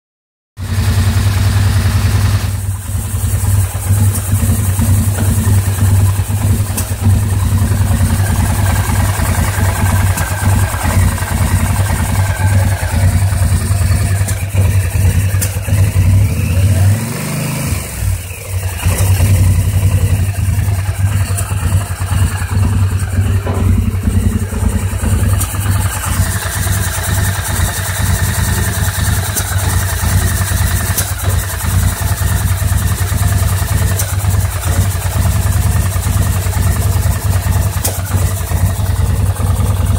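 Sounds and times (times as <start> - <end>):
atv engine idling rough: 0.6 - 39.9.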